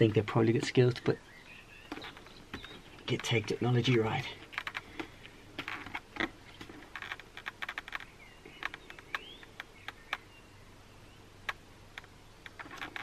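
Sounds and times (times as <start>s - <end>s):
plastic parts clicking and tapping: 4.5s - 8.0s.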